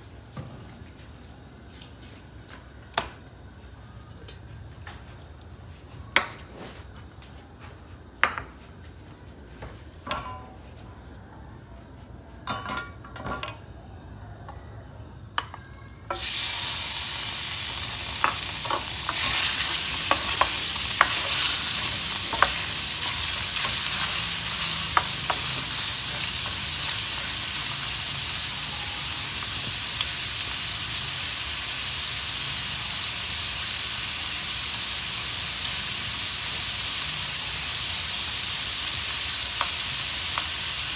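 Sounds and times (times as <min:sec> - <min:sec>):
food frying in hot oil: 0:16.1 - 0:40.9
utensil clicking against pan: 0:17.9 - 0:27.4.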